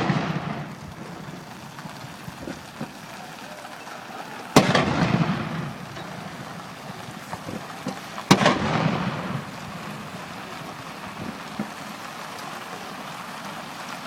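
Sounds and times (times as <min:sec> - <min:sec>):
cannon shots with rolling echo: 0:00.0 - 0:02.4, 0:04.4 - 0:10.4.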